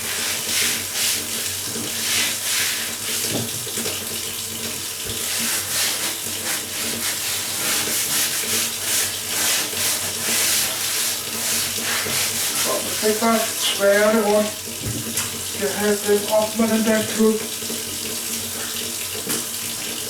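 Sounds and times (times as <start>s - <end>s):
steel wool scrubbing floor: 0.0s - 3.3s, 5.2s - 14.6s.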